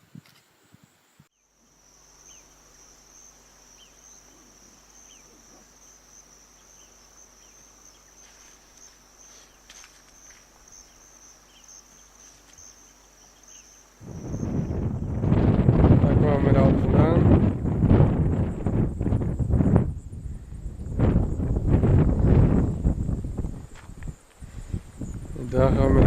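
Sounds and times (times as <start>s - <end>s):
high-pitched insect drone: 1.3s - 16.0s.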